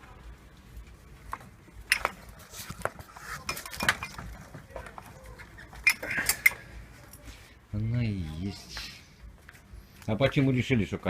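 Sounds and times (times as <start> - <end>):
small hard parts clattering: 1.3 - 7.2.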